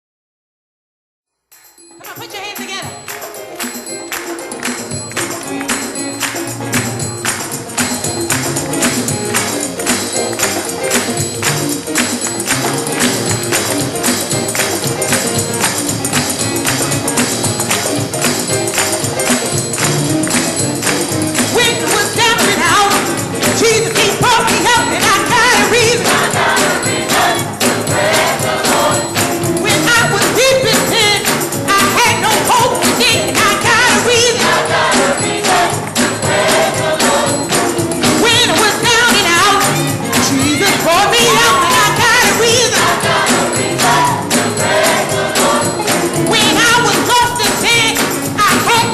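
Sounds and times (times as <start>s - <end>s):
tambourine: 1.5s - 48.9s
uptempo gospel music: 1.6s - 48.9s
choir singing: 21.7s - 31.1s, 32.3s - 37.9s, 40.6s - 46.5s.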